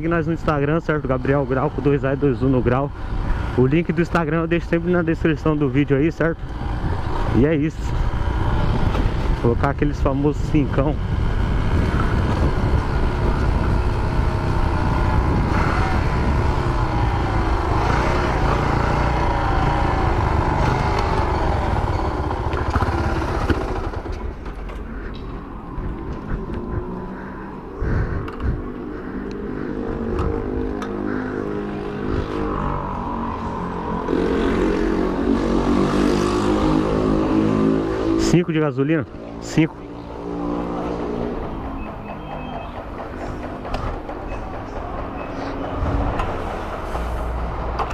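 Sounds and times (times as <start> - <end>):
wind noise on microphone: 6.4 - 16.9, 27.8 - 28.8
moped engine running: 6.4 - 38.3.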